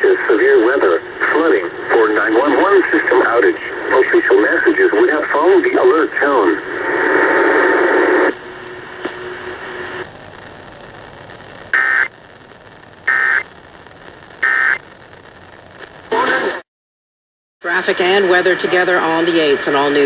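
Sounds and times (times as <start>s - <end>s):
loud radio static: 0.0s - 16.6s, 17.6s - 20.0s
noise burst: 0.0s - 16.6s
digital data tone bursts: 11.7s - 12.1s, 14.4s - 14.8s.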